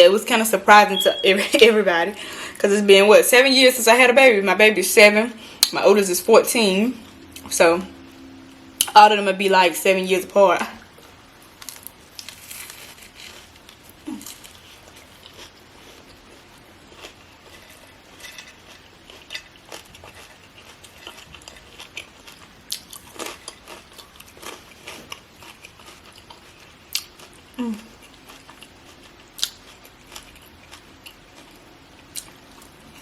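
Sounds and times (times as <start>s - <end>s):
person chewing crunchy food: 10.8s - 33.0s.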